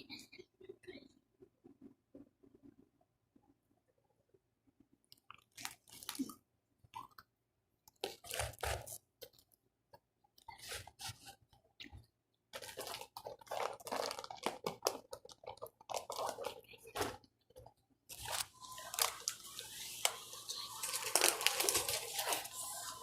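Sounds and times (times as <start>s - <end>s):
person chewing crunchy food: 5.2s - 7.3s, 7.9s - 9.5s, 12.6s - 17.0s, 17.6s - 23.0s.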